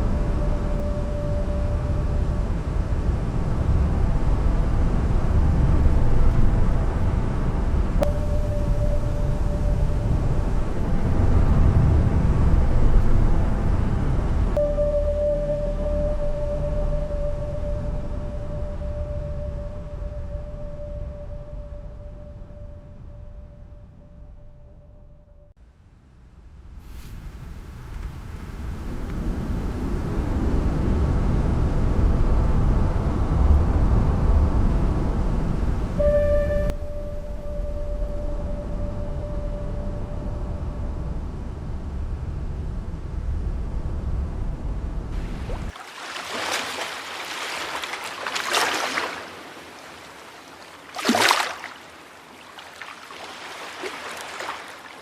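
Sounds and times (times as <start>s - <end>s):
low rumble: 0.0s - 25.6s, 26.4s - 45.8s
ocean waves rushing: 45.1s - 55.0s.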